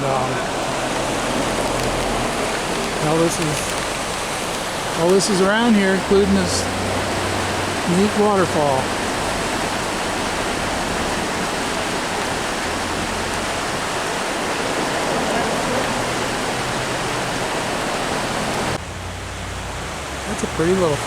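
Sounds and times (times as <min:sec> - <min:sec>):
waterfall roaring: 0:00.0 - 0:21.0.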